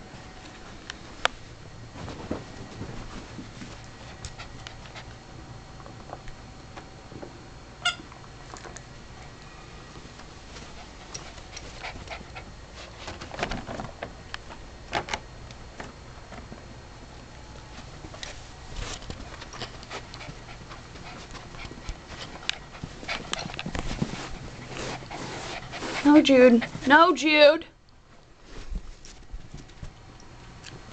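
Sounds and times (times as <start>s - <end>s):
animals scuffling and tapping: 1.9s - 5.1s, 17.6s - 27.0s.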